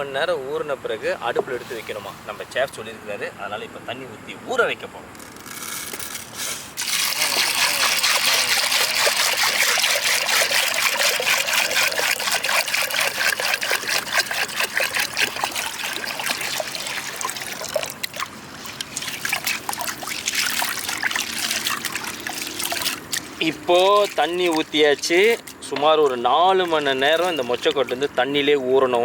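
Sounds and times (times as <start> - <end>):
water pouring into pot: 6.8 - 28.4.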